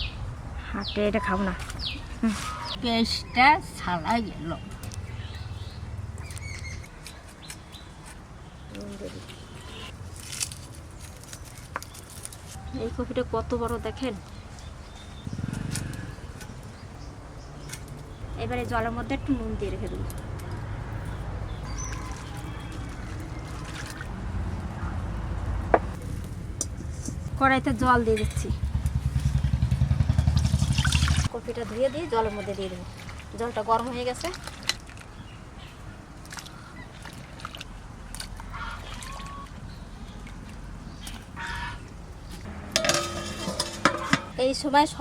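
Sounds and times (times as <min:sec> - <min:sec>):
water sloshing in a bowl: 0:21.6 - 0:24.1, 0:30.4 - 0:41.8
sharp clatter: 0:42.7 - 0:44.4.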